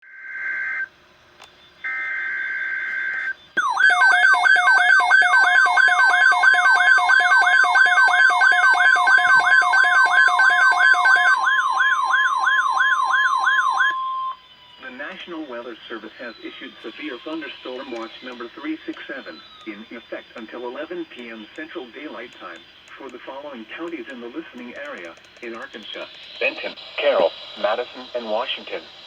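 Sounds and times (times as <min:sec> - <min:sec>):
warbling alert siren: 0:00.0 - 0:00.9, 0:01.8 - 0:22.7
steady attention tone: 0:01.6 - 0:29.0
screechy digital header tones: 0:01.8 - 0:28.8.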